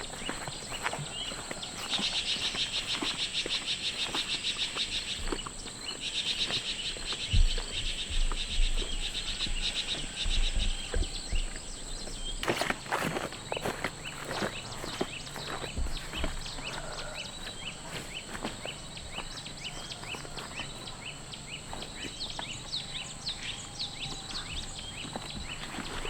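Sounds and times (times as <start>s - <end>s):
insect chirping in pulses: 0.0s - 26.0s
soft low thumps: 5.1s - 21.0s.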